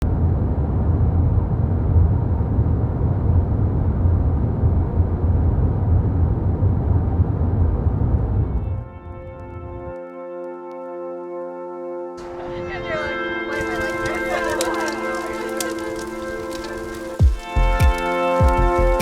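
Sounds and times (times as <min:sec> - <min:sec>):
car driving rumble: 0:12.2 - 0:19.0.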